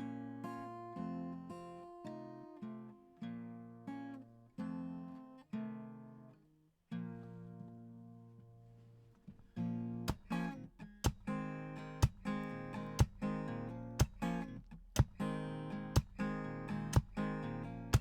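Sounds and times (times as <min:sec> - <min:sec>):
acoustic guitar strumming: 0:06.9 - 0:18.0.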